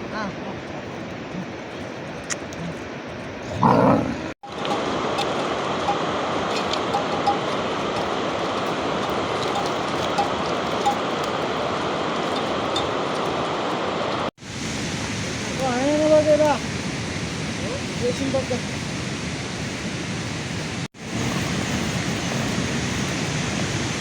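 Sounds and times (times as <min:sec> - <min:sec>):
steady rain: 0:07.6 - 0:24.0.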